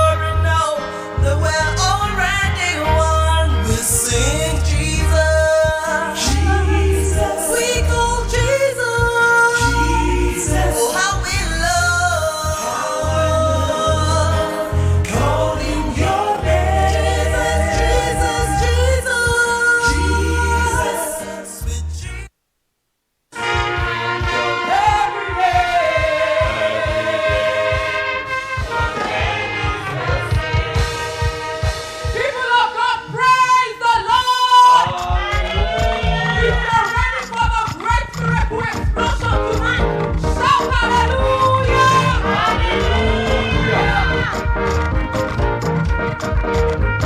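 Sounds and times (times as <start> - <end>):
band accompaniment: 0.0 - 21.9, 23.3 - 47.0
heavy bass line: 1.4 - 21.0, 38.1 - 47.0
gospel choir singing: 1.7 - 22.1, 23.4 - 32.4, 34.2 - 37.2, 39.2 - 47.0
choir holding a note: 15.2 - 19.3, 23.4 - 31.9, 42.0 - 45.2.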